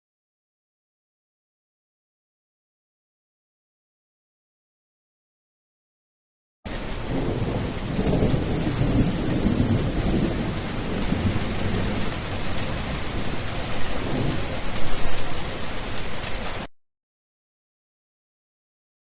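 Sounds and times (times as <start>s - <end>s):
low thunder: 6.7s - 16.6s
steady rain: 6.7s - 16.7s.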